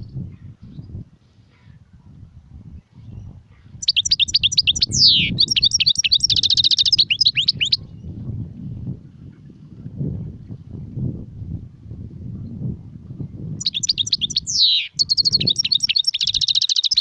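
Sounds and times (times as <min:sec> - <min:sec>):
goldfinch twittering song: 0:03.0 - 0:08.2, 0:13.6 - 0:17.0.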